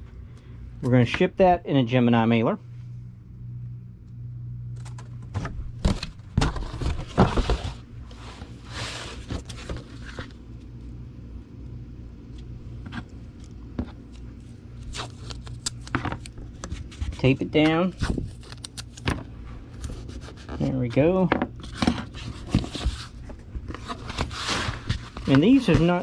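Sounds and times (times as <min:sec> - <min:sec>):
steady low hum: 0:00.0 - 0:26.0
scraping rustles: 0:06.4 - 0:10.4, 0:21.6 - 0:26.0.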